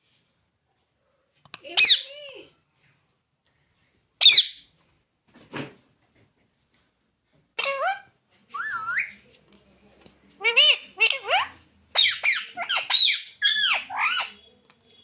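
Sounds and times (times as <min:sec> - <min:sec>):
parrot squawking: 0:04.2 - 0:04.6, 0:07.6 - 0:09.1, 0:10.4 - 0:14.4
parrot rasping call: 0:10.4 - 0:14.3.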